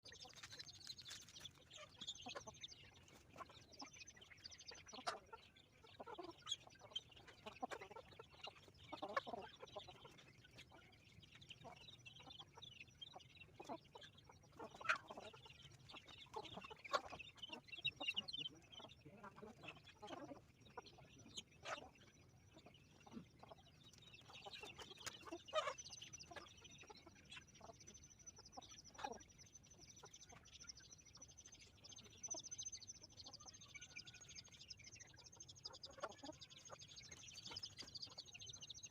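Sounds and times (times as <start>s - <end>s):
beaks pecking at corn: 0.0s - 30.6s
chickens clucking softly: 0.0s - 38.9s.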